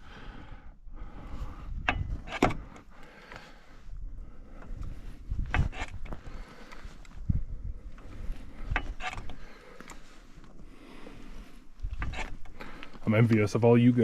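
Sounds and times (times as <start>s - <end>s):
jack being worked by hand: 1.8s - 2.9s, 4.6s - 7.1s, 8.0s - 10.0s, 11.9s - 12.7s.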